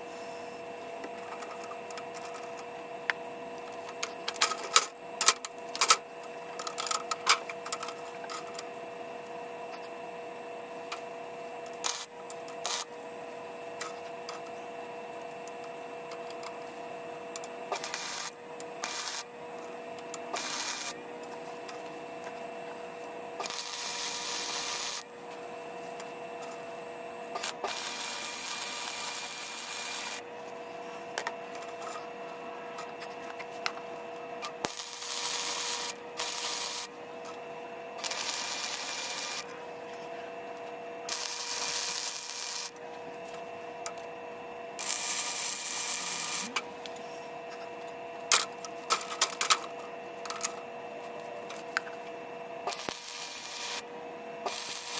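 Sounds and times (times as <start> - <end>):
steady hum: 0.0 - 54.9
arc welding crackling hiss: 11.8 - 12.9, 17.7 - 19.2, 20.3 - 21.0, 23.4 - 25.0, 27.4 - 30.2, 34.6 - 36.9, 38.0 - 39.4, 41.1 - 42.8, 44.8 - 46.6, 52.7 - 54.9.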